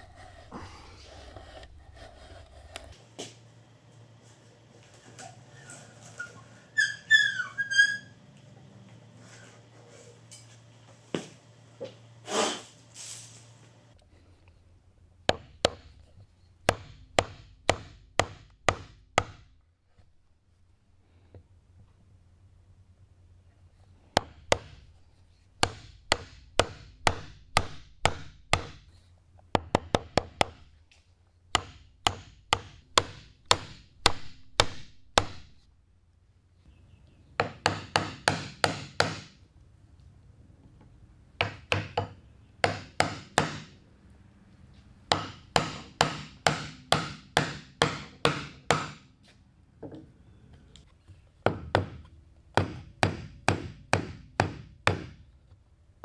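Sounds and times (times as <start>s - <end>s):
mallet striking chisel into wood: 15.3s - 15.9s, 16.6s - 19.5s, 25.6s - 28.8s, 29.6s - 30.6s, 31.5s - 35.5s, 37.4s - 39.4s, 41.4s - 43.8s, 45.1s - 49.0s, 51.4s - 55.2s.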